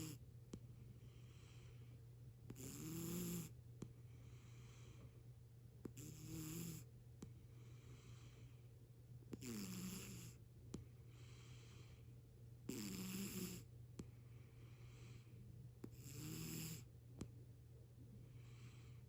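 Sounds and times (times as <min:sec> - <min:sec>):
cat snoring: 0:00.0 - 0:00.2, 0:02.5 - 0:03.6, 0:05.8 - 0:06.9, 0:09.3 - 0:10.4, 0:12.7 - 0:13.7, 0:15.8 - 0:16.9, 0:18.4 - 0:19.0
faint steady hum: 0:00.0 - 0:19.0.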